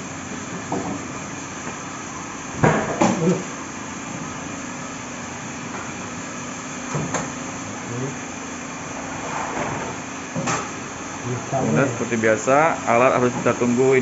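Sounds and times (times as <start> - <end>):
steam autoclave humming and hissing: 3.2 - 14.0.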